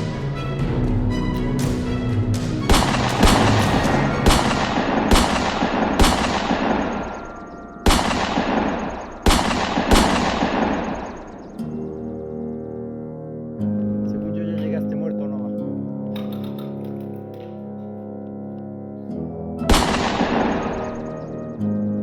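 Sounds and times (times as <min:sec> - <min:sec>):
background music: 0:00.0 - 0:22.0
video game gunshots: 0:02.7 - 0:11.6, 0:19.7 - 0:21.3.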